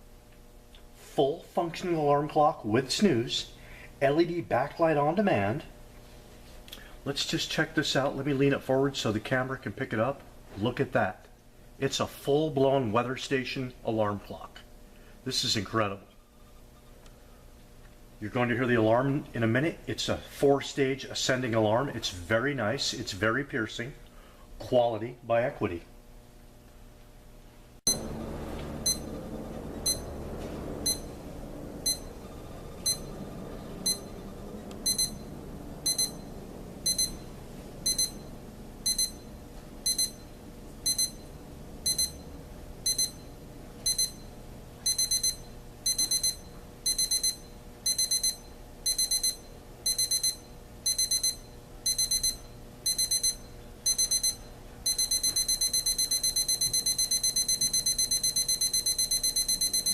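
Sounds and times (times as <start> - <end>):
alarm clock electronic beeps: 27.9 - 28.1, 28.8 - 29.1, 29.8 - 30.1, 30.8 - 31.2, 31.8 - 32.2, 32.8 - 33.1, 33.8 - 34.2, 34.8 - 40.2, 40.8 - 42.2, 42.8 - 59.9.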